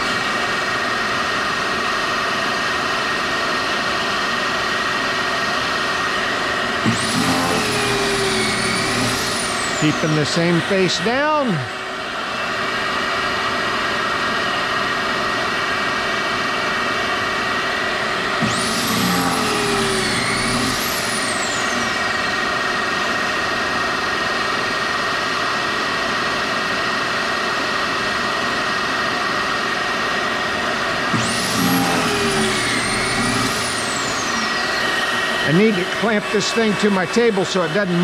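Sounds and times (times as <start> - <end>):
drill boring through wood: 0.0 - 2.7, 5.5 - 13.0, 16.6 - 25.2, 29.5 - 38.0
shop vacuum running: 0.0 - 38.0.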